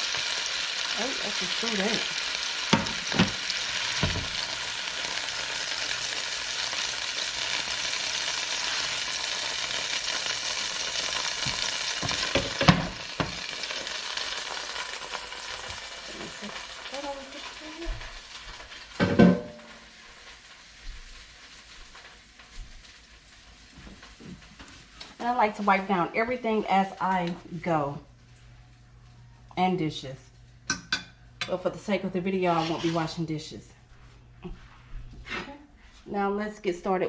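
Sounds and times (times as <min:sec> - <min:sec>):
chicken sizzling in frying pan: 0:00.0 - 0:25.9.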